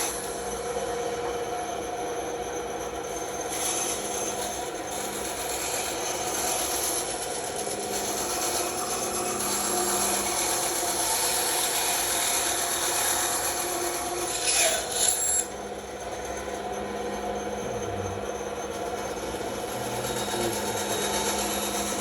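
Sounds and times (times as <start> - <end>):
bandsaw cutting wood: 5.0 - 15.5, 19.1 - 22.0.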